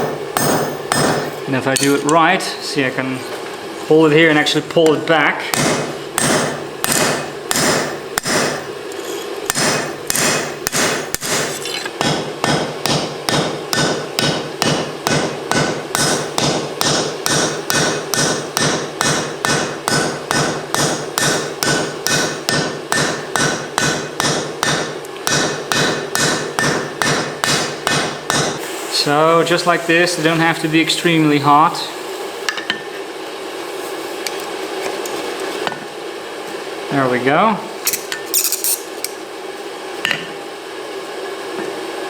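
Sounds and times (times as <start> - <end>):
anvil ringing: 0.0 - 2.0
hammer striking steel on anvil: 0.0 - 2.2, 4.8 - 8.7, 9.5 - 28.6.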